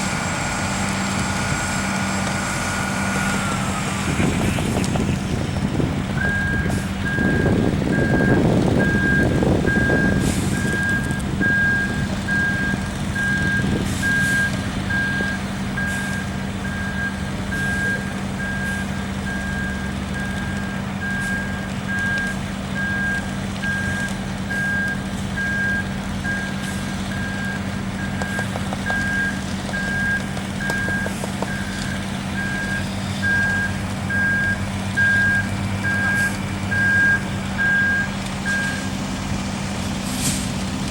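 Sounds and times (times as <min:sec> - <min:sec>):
diesel engine running: 0:00.0 - 0:40.9
reversing alarm beeps: 0:06.2 - 0:38.9.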